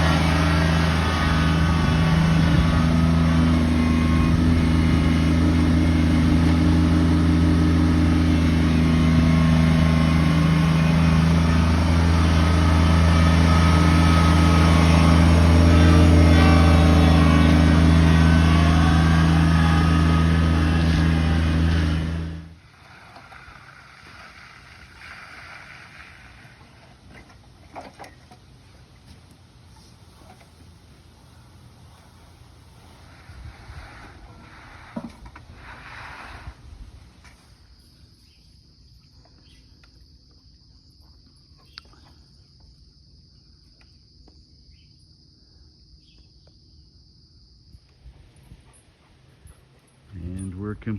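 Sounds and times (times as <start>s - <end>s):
engine humming: 0.0s - 38.2s, 47.8s - 50.9s
crickets trilling: 37.2s - 47.9s.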